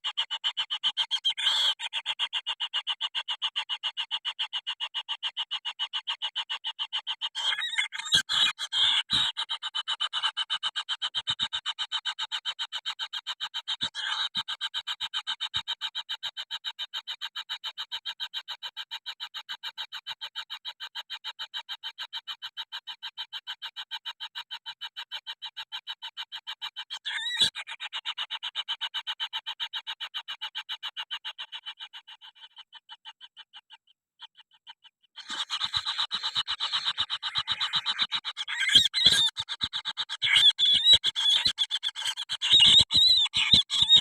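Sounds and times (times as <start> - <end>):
kingfisher calling: 35.2 - 44.0.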